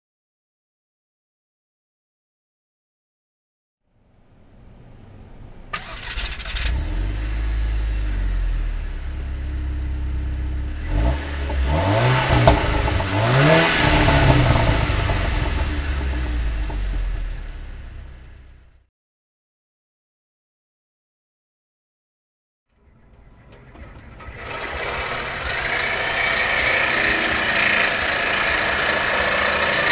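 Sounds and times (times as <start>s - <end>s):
car exhaust idling: 4.3s - 18.8s, 23.5s - 29.9s
engine revving: 5.7s - 18.8s, 24.1s - 29.9s.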